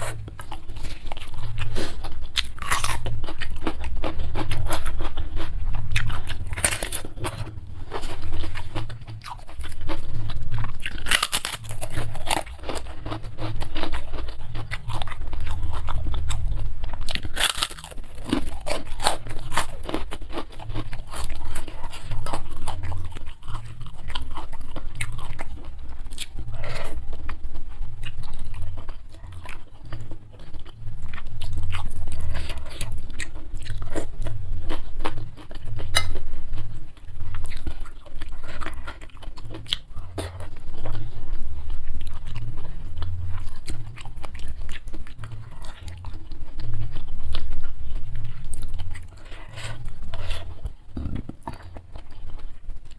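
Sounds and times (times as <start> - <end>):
close chewing with wet clicks: 0.0 - 52.9
crunchy bites into crisp food: 2.4 - 4.5.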